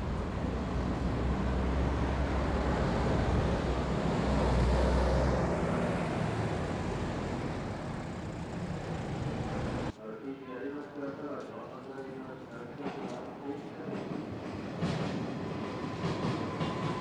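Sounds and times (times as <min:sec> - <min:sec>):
passing road vehicle: 0:00.0 - 0:09.9.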